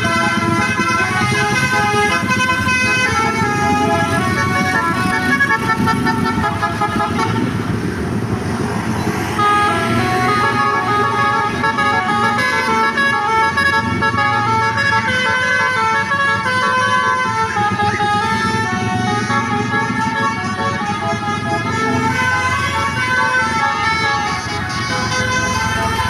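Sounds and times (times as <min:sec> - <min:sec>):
multi-tone musical bus horn: 0:00.0 - 0:07.8, 0:09.3 - 0:26.0
bus engine rumbling: 0:00.0 - 0:26.0.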